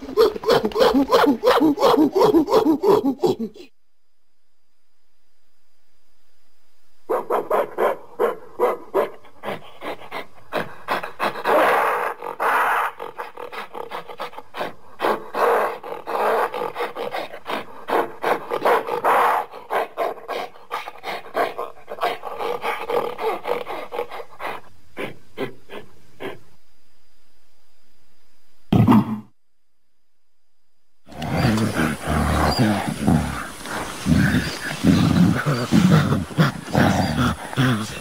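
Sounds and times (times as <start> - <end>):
gorilla calls: 0.0 - 3.7, 9.1 - 19.8, 31.1 - 38.0
gorilla grunts and barks: 0.0 - 3.7, 7.1 - 26.5, 28.7 - 29.3, 31.1 - 38.0.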